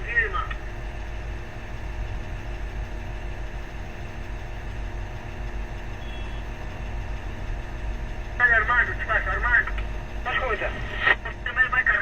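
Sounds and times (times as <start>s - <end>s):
faint steady tones: 0.0s - 12.0s
diesel engine rumbling: 3.6s - 12.0s.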